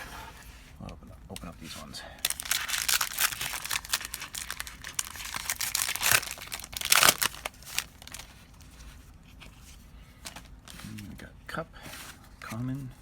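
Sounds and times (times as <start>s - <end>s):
wrapper being torn and crinkled: 2.2s - 8.7s.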